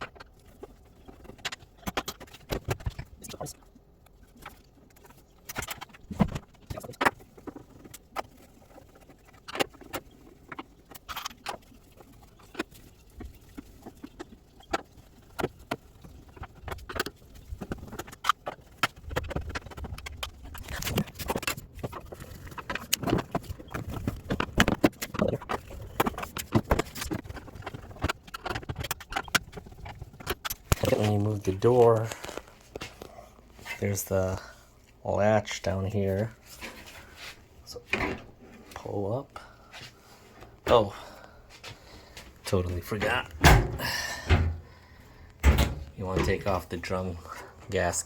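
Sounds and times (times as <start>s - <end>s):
hand tools clicking and knocking: 43.0s - 44.7s, 45.4s - 46.5s.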